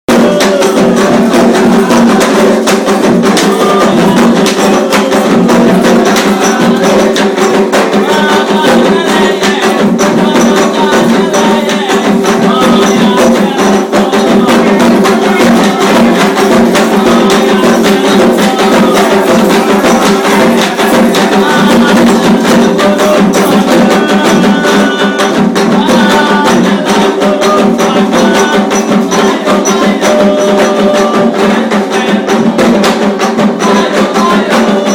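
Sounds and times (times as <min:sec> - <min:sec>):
hand drumming: 0:00.1 - 0:34.9
sharp clacking percussion: 0:00.1 - 0:34.9.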